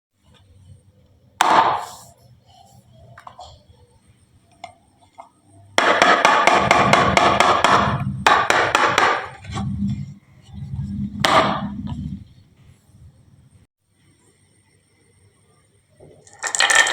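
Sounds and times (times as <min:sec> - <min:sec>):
marbles rolling with low rumble: 0:16.1 - 0:16.9.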